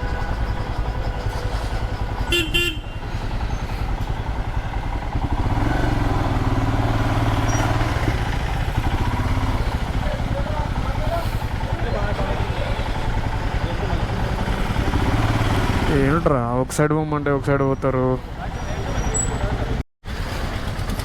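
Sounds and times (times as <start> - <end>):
vehicle horn tooting: 0.0 - 3.4
motorcycle engine running: 0.0 - 16.4, 19.0 - 21.0.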